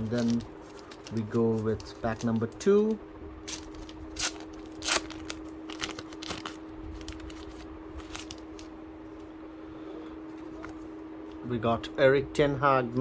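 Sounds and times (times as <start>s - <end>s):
foil wrapper tearing: 0.0s - 8.7s
wrapper crinkling: 0.0s - 8.7s.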